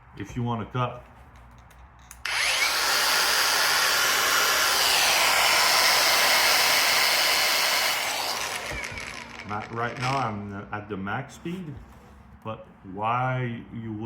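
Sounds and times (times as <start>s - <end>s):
angle grinder running: 2.3s - 10.7s.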